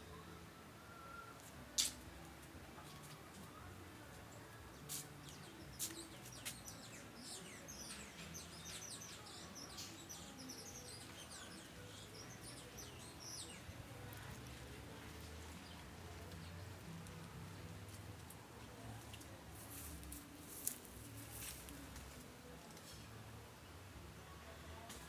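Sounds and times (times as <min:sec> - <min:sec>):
small birds chirping: 0:04.7 - 0:18.4.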